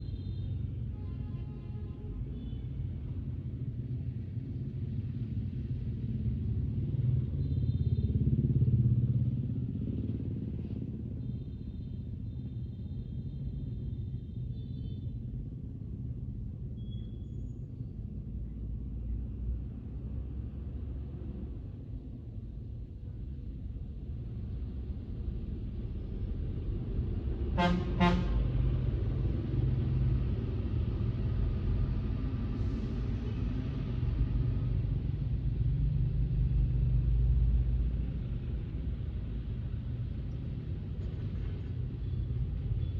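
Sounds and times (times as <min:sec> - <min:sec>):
road traffic rumble: 0:00.0 - 0:42.9
vehicle horn beeps: 0:27.6 - 0:28.4.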